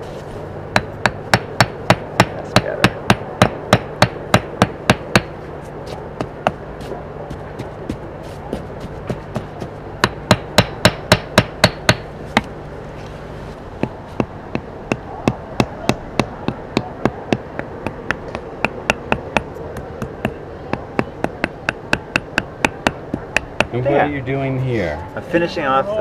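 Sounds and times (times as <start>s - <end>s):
hammer tapping on brick: 13.8s - 23.7s.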